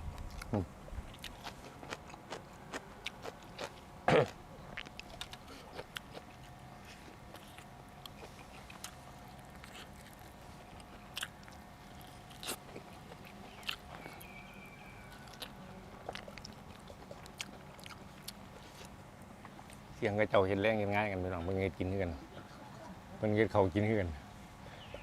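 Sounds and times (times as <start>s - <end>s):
person chewing crunchy food: 0.1s - 19.9s.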